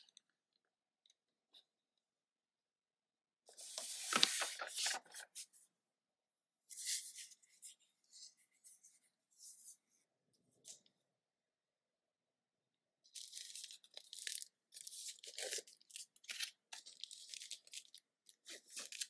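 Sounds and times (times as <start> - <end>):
packaging rustling: 3.8 - 5.3
small ticks and crinkles: 13.1 - 19.0.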